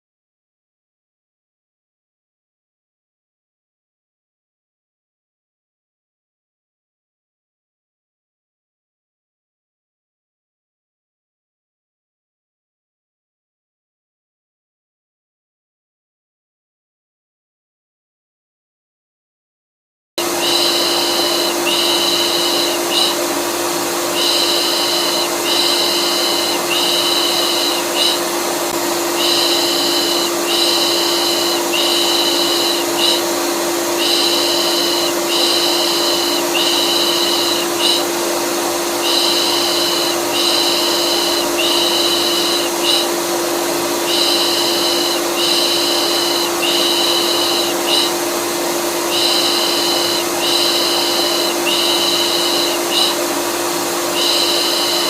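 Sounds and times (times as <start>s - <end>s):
vacuum cleaner running: 20.2s - 55.0s
hissing shushes: 20.3s - 43.3s.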